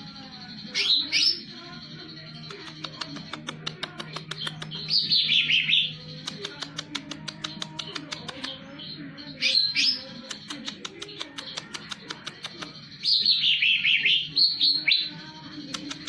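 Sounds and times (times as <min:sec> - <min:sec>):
bird singing sweeping phrases: 0:00.0 - 0:16.0
sharp bird ticks: 0:02.4 - 0:08.6, 0:09.8 - 0:13.4, 0:15.6 - 0:16.0.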